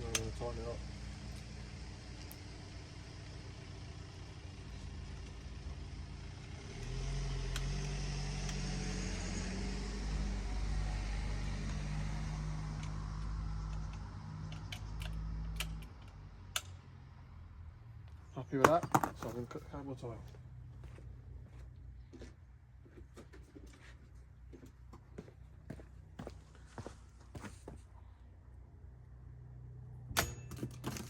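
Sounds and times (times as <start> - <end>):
low motor hum: 0.0 - 31.0
sharp metallic clicks: 0.1 - 0.4, 12.8 - 16.9.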